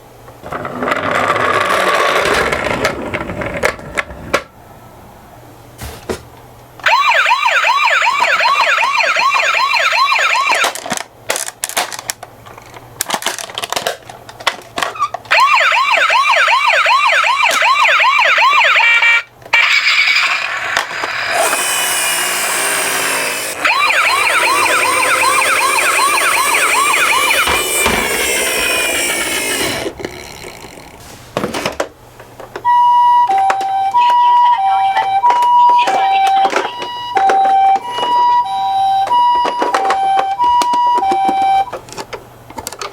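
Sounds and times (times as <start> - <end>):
toy siren warbling: 6.8 - 10.7, 15.3 - 29.9, 32.7 - 41.7.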